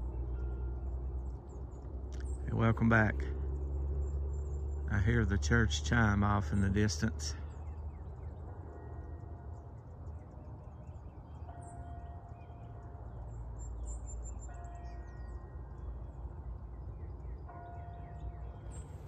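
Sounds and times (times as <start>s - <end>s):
steady low rumble: 0.0s - 14.5s
distant church bell striking: 0.0s - 19.0s.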